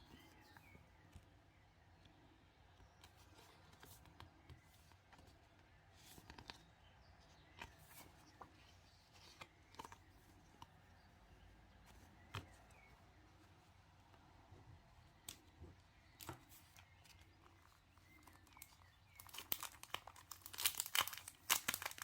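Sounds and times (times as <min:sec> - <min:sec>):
faint bird chirps: 0:00.0 - 0:20.2
paper and plastic rustling: 0:16.1 - 0:22.0.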